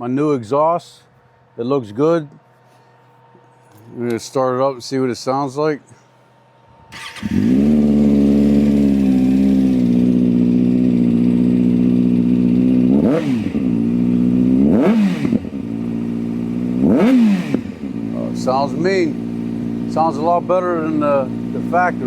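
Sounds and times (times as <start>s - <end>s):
motorcycle engine revving: 6.9s - 22.0s
motorcycle engine starting and idling: 6.9s - 22.0s.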